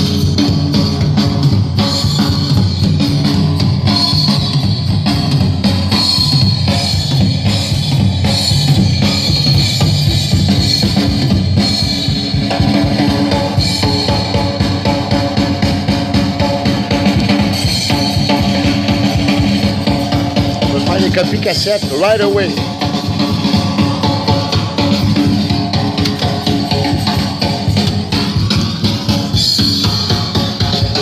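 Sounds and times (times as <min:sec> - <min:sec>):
drum kit beat: 0:00.0 - 0:31.0.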